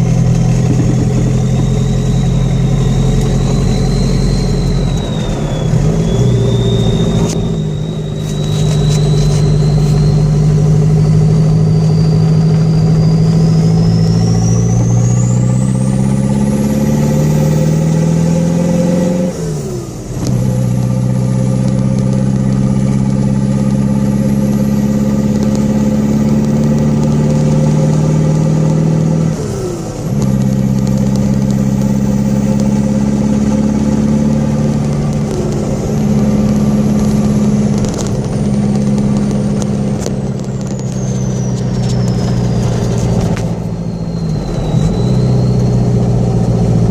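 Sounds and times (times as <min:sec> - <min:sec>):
diesel engine pulling under load: 0:00.0 - 0:46.9
turbo whistle: 0:00.0 - 0:46.9.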